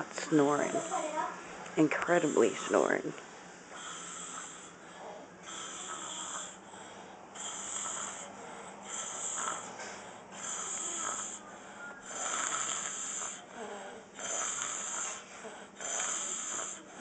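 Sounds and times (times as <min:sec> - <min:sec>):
soft breaths: 0:00.0 - 0:17.0
man snoring: 0:03.7 - 0:06.7, 0:07.4 - 0:09.7, 0:10.3 - 0:17.0.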